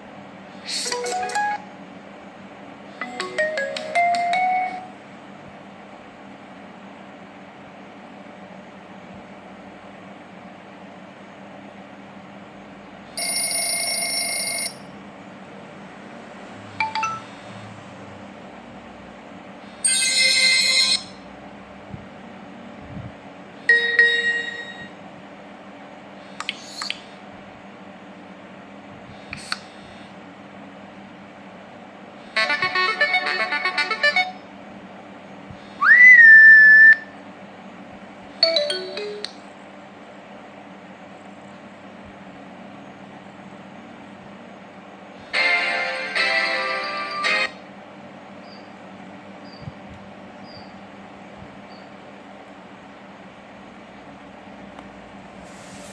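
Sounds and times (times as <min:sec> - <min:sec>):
phone ringtone chord: 0:03.0 - 0:04.9, 0:13.2 - 0:14.9, 0:16.8 - 0:17.3, 0:19.8 - 0:21.2, 0:23.7 - 0:24.9, 0:38.4 - 0:39.3
rising phone tone: 0:16.8 - 0:17.3
faint steady hiss: 0:55.3 - 0:55.9.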